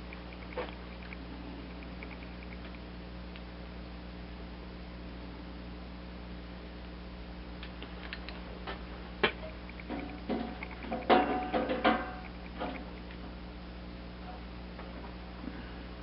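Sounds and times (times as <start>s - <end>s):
metallic clanks: 9.9s - 12.8s.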